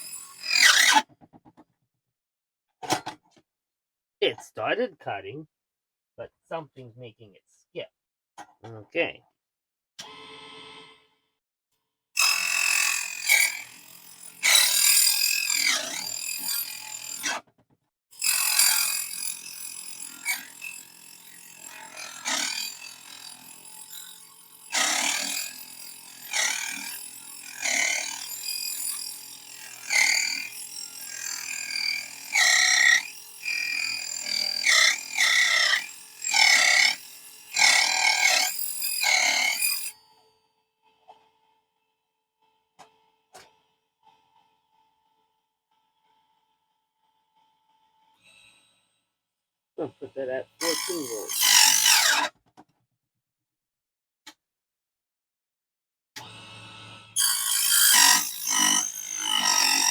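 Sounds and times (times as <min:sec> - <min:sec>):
table saw screeching through metal: 0:00.0 - 0:01.0, 0:14.3 - 0:17.4, 0:21.7 - 0:40.0, 0:50.6 - 0:52.3, 0:57.2 - 0:59.9.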